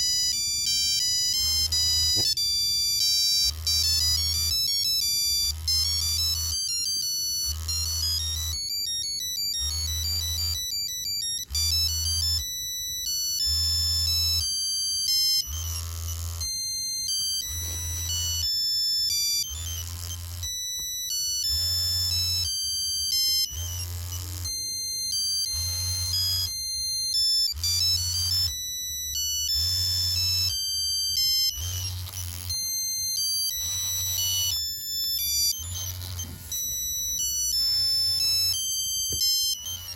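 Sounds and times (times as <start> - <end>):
monophonic ringtone beeping melody: 0.0 - 39.9
low pulsing buzz: 0.1 - 2.4, 21.4 - 22.5, 23.4 - 26.8, 31.4 - 39.9.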